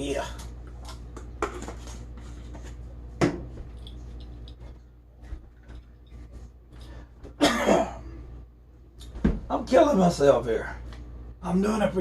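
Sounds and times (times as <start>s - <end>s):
steady low hum: 0.0s - 12.0s
man coughing: 7.4s - 8.2s.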